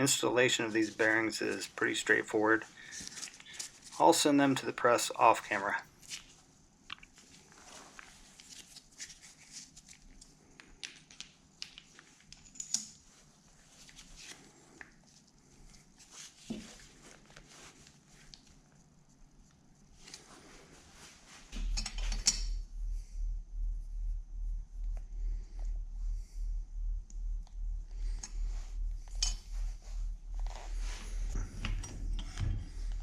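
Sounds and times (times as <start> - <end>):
low pulsing rumble: 21.6 - 33.0.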